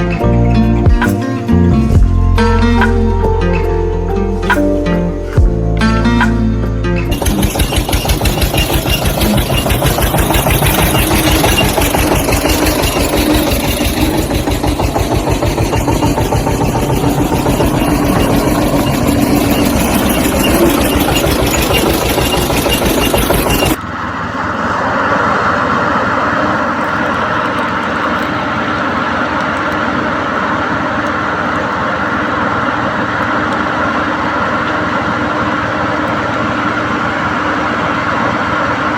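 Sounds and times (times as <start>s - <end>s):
tractor engine thudding: 7.0s - 24.2s.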